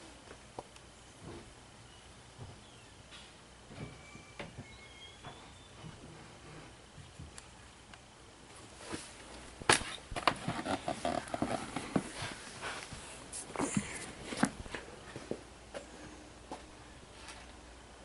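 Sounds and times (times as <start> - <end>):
faint metal squeak: 3.8 - 6.0.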